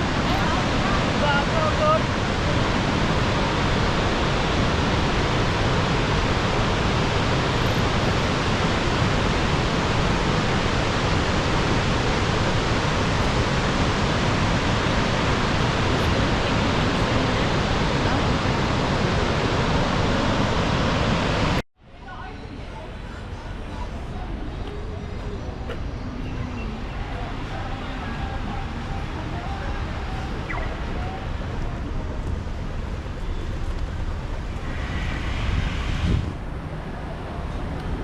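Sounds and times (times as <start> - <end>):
waterfall rushing: 0.0 - 21.6.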